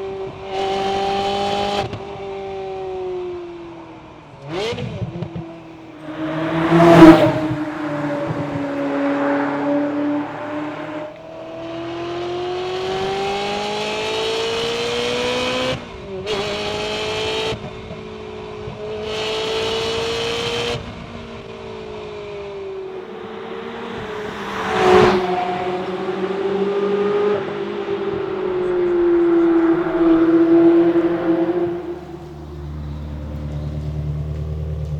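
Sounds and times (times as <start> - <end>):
sports car engine through gears: 5.9 - 11.4, 22.8 - 34.9.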